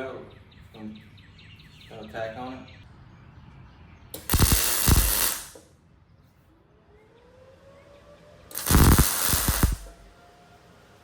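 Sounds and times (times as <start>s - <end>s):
arc welder crackling: 4.2s - 5.6s, 8.5s - 10.2s.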